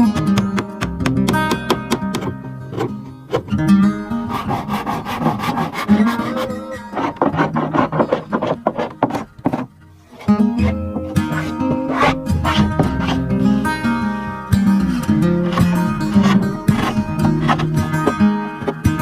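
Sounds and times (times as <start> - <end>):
acoustic guitar picked notes: 0.0 - 8.0, 9.7 - 19.0.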